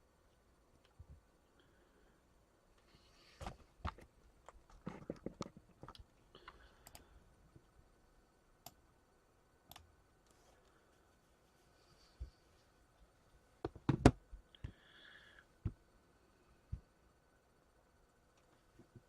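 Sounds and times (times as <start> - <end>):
small objects clicking on a desk: 3.8 - 7.1.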